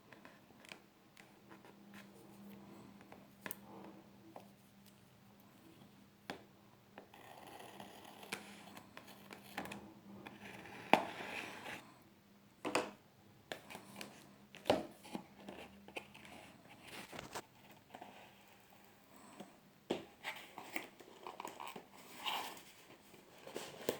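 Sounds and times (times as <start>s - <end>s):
packaging rustling and scraping: 14.9s - 18.7s, 20.0s - 23.9s.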